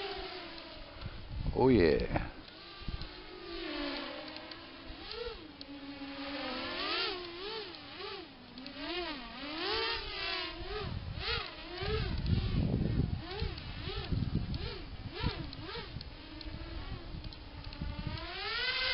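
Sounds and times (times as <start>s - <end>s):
drone motors whining: 0.0s - 18.9s.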